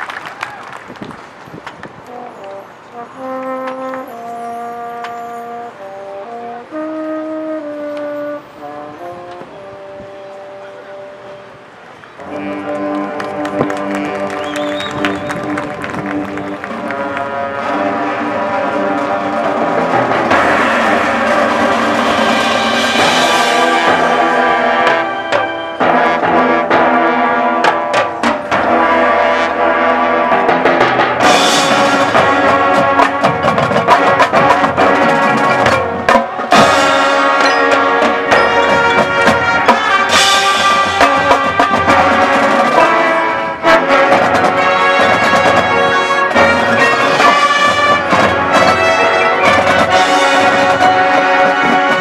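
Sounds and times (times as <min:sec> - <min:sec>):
brass section chords: 0:02.0 - 0:52.0
marching percussion: 0:12.2 - 0:52.0.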